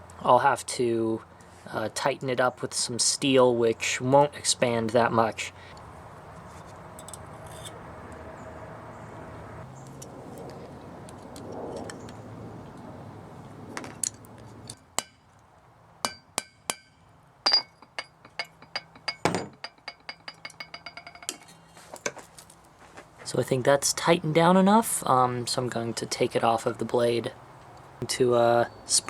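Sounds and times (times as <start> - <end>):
sharp metallic clinks: 5.7 - 8.2, 16.1 - 21.6.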